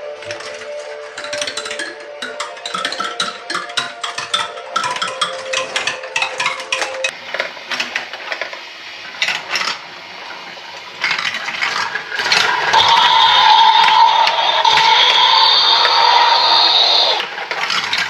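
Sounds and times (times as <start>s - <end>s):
marbles rattling through marble run: 0.2s - 9.9s, 10.8s - 18.0s
electronic toy tone: 12.7s - 17.2s.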